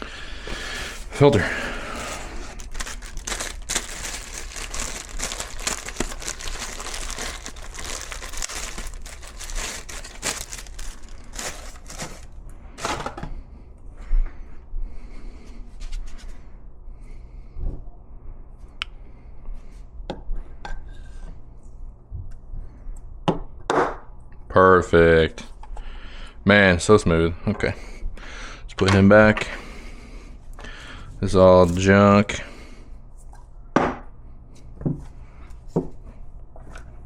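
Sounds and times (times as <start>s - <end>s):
packaging crinkling and tearing: 0.8s - 12.4s.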